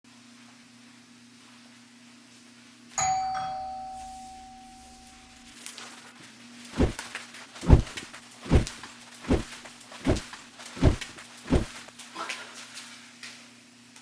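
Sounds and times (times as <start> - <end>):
faint steady hum: 0.1 - 5.7
heavy footsteps on hard floor: 6.8 - 7.0, 7.6 - 11.8.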